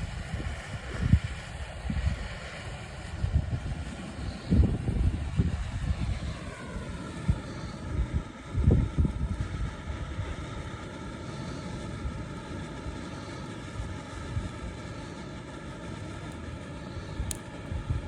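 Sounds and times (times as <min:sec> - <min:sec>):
wind buffeting microphone: 0:00.0 - 0:11.0, 0:17.0 - 0:18.0
firework fountain hissing: 0:00.0 - 0:18.0.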